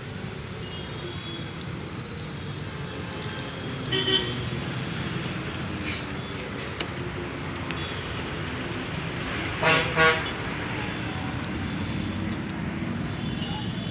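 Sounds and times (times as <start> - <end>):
road traffic rumble: 0.0 - 13.9
vehicle horn toots: 3.9 - 4.4, 9.6 - 10.4.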